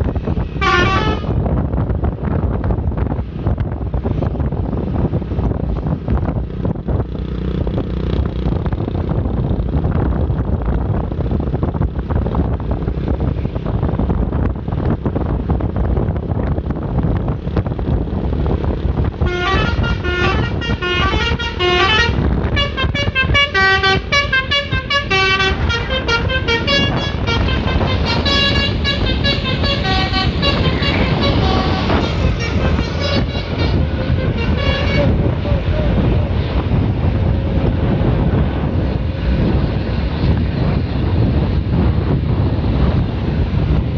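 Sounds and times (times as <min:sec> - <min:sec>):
low road rumble: 0:00.0 - 0:43.9
wind: 0:00.0 - 0:43.9
bus multi-note air horn melody: 0:00.6 - 0:01.4, 0:19.2 - 0:35.4.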